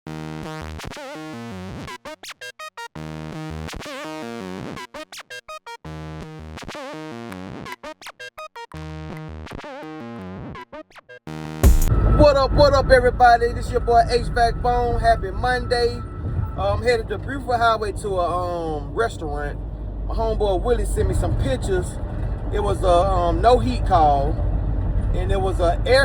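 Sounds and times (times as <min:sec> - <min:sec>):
synthesizer music: 0:11.3 - 0:17.9
stuttering chopped notes: 0:11.6 - 0:16.0.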